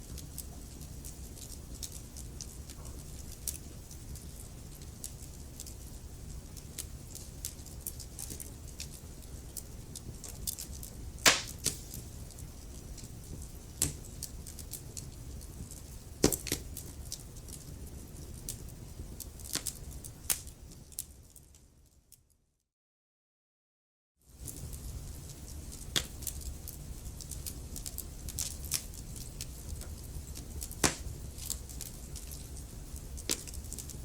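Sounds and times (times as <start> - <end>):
wood fire crackling: 0.0 - 22.0, 24.3 - 34.0
loud pops of fire: 11.2 - 12.2, 16.2 - 16.7, 29.9 - 32.5, 33.2 - 33.9.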